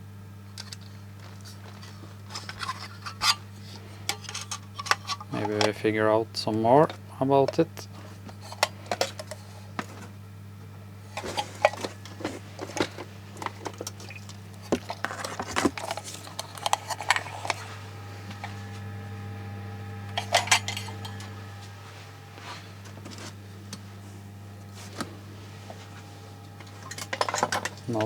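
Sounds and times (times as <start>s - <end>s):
steady low hum: 0.0s - 28.0s
electronic parts clinking in a box: 0.6s - 3.4s, 11.2s - 17.7s, 26.6s - 28.0s.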